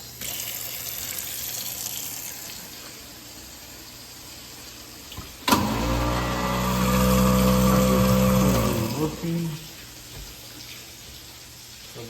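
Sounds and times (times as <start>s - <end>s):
running tap water: 0.0s - 12.0s
garbage disposal motor humming: 5.1s - 9.8s.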